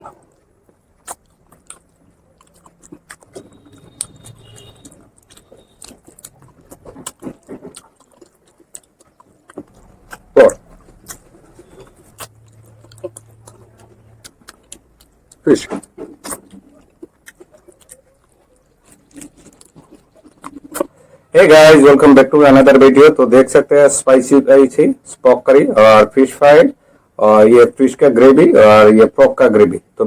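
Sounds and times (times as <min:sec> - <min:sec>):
chewing and biting: 0:00.0 - 0:21.2.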